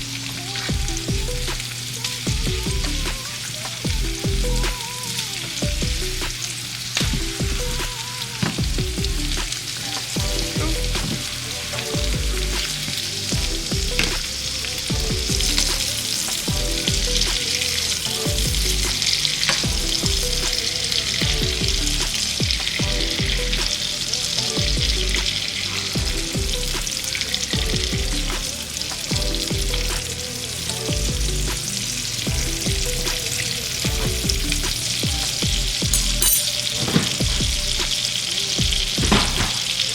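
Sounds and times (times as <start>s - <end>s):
background music with bass: 0.0s - 39.9s
food sizzling in a frying pan: 1.6s - 2.3s, 6.3s - 7.0s, 9.4s - 11.9s, 14.1s - 16.5s, 17.2s - 19.6s, 29.8s - 37.2s, 37.8s - 39.9s
stirring clatters: 33.8s - 37.5s.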